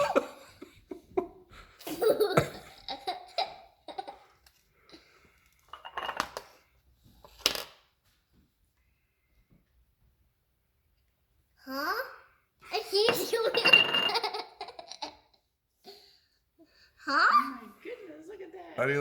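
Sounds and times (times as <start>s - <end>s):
laughter bursts: 0.0s - 4.3s.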